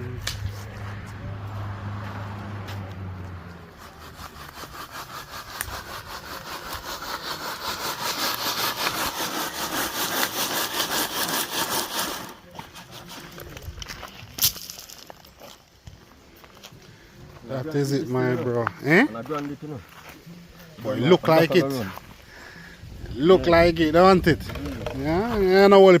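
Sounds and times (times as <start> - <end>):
rasping strokes: 3.2 - 13.8.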